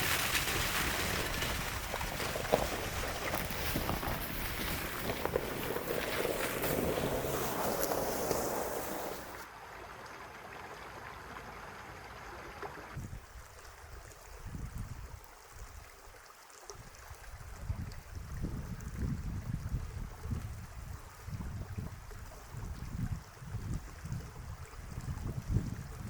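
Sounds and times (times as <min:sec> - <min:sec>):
wind rumbling on microphone: 0:00.0 - 0:09.4, 0:13.0 - 0:15.9, 0:16.8 - 0:26.0
brook running: 0:00.0 - 0:16.4.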